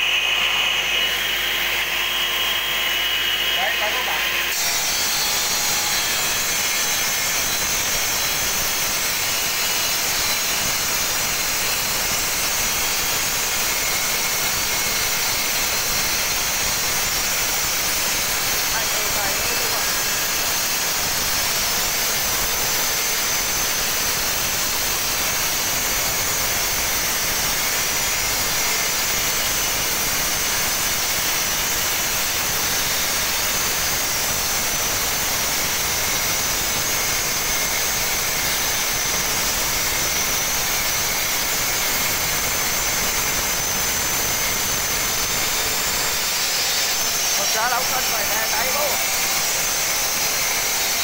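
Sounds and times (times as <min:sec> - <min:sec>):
circular saw cutting stone: 0:00.0 - 0:51.0.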